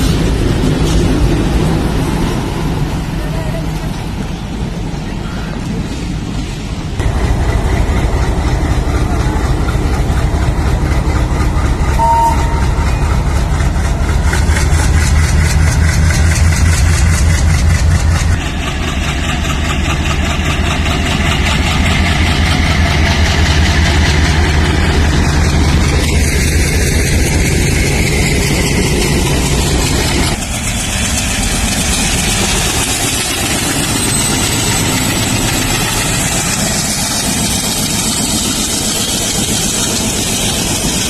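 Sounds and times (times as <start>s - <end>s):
diesel locomotive engine chugging: 0.0s - 41.0s
two-note tone: 12.0s - 13.5s.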